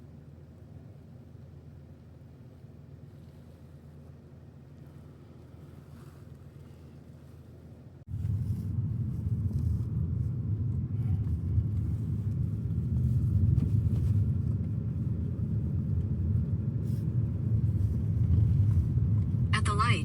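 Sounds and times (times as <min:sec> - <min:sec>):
car rumble from inside cabin: 0:08.0 - 0:20.0.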